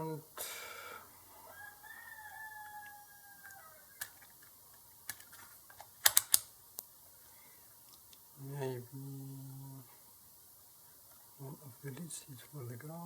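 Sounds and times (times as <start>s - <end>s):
sharp clicks: 5.1s - 6.9s.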